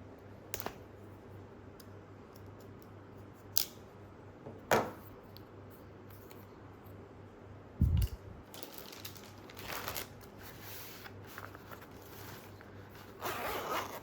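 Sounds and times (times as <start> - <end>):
nylon bag handling: 8.5 - 14.0.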